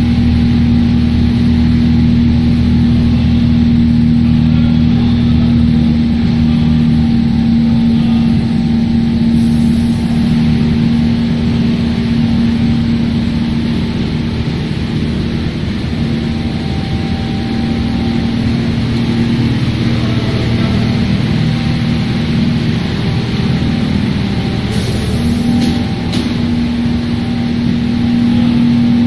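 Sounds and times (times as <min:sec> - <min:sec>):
loud machine hum: 0:00.0 - 0:29.0
fan-like hiss: 0:09.1 - 0:16.0, 0:18.3 - 0:28.9.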